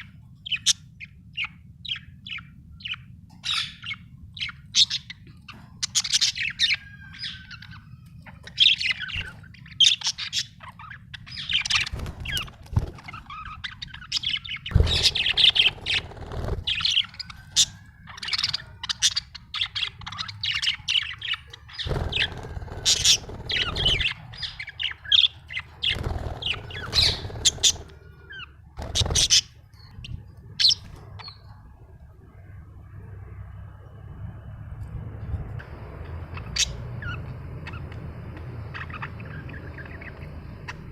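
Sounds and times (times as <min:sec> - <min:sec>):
budgerigar chirping and squawking: 0:00.0 - 0:30.0, 0:38.6 - 0:40.9
steady low hum: 0:00.0 - 0:40.9.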